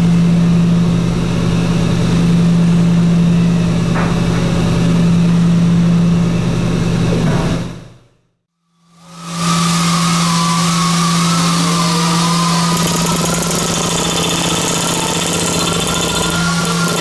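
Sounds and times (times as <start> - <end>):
tube-rolling machine drone: 9.5 - 17.0.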